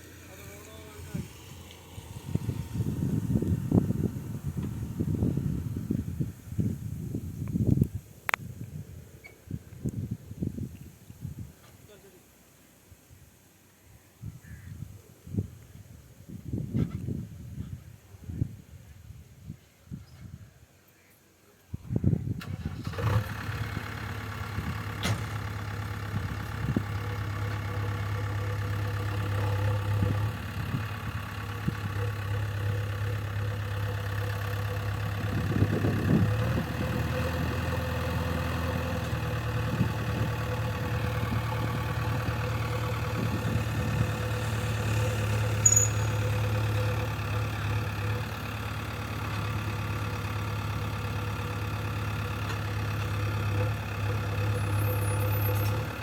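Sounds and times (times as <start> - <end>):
diesel engine idling: 0.0 - 7.2, 22.2 - 56.0.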